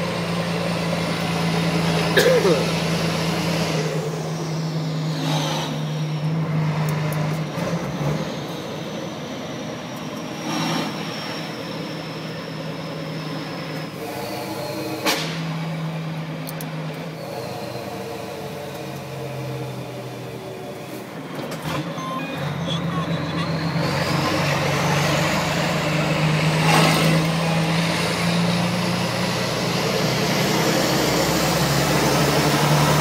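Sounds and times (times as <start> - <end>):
diesel truck engine running: 0.0 - 33.0
turbocharger whistle: 21.8 - 26.0.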